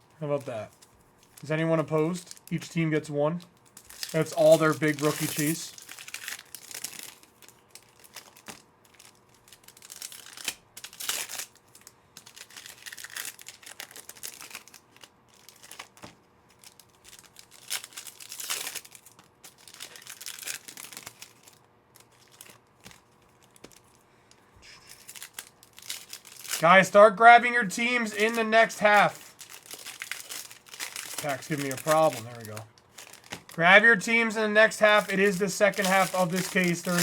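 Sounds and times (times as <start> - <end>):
foil wrappers crinkling: 0.0 - 37.0
card packs tearing open: 0.4 - 2.8, 3.5 - 24.0, 24.8 - 37.0
cards shuffling: 3.8 - 6.3, 27.5 - 37.0.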